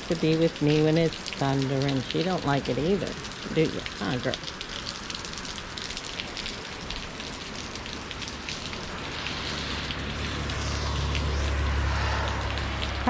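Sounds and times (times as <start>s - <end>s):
drips ticking: 0.0s - 13.0s
heavy rain pouring: 0.0s - 13.0s
low rumble: 9.0s - 13.0s.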